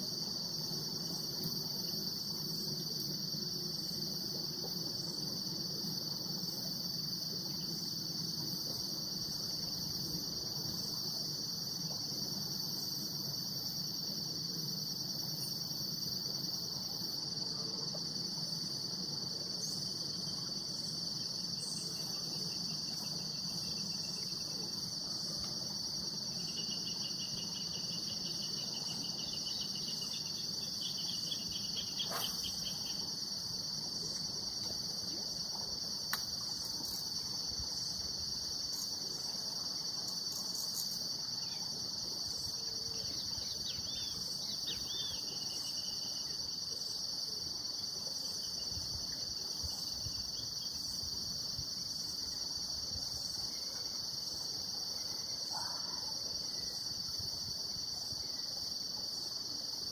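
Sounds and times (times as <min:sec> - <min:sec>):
insects chirring: 0:00.0 - 0:59.9
short insect chirps: 0:26.3 - 0:33.4.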